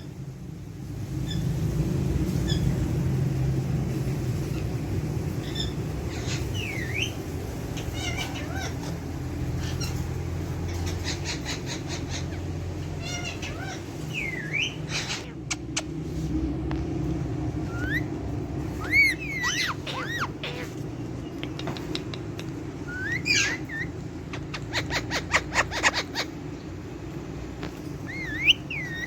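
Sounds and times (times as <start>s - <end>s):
parrots whistling and chirping: 4.0s - 16.0s, 17.5s - 26.8s, 27.7s - 29.0s.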